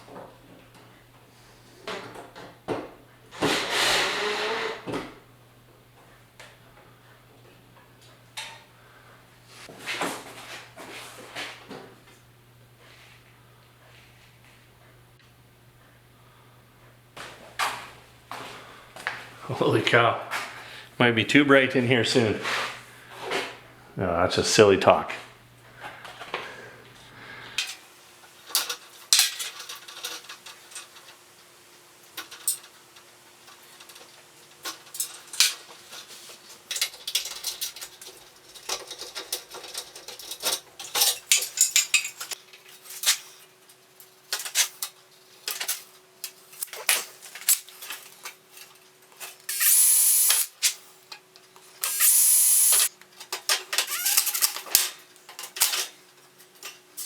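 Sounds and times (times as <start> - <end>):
tools clicking and rattling: 33.5 - 43.3, 44.3 - 57.0
power drill running: 49.5 - 50.6, 51.8 - 52.9, 53.8 - 54.6.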